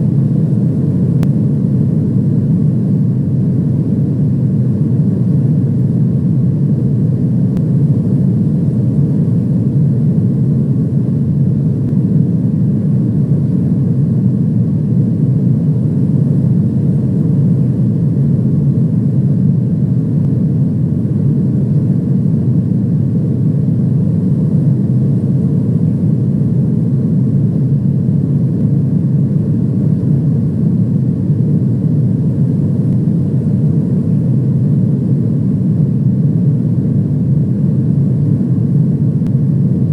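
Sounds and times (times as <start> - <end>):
airliner cabin rumble: 0.0 - 39.9.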